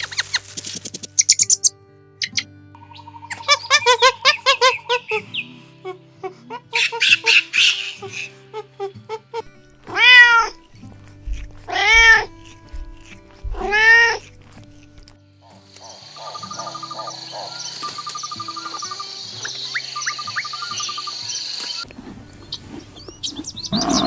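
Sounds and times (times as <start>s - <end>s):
background music: 0.0s - 24.0s
quick high chirping calls: 1.0s - 5.5s, 15.8s - 21.8s
cat meowing: 9.9s - 10.6s, 11.7s - 12.3s, 13.5s - 14.2s.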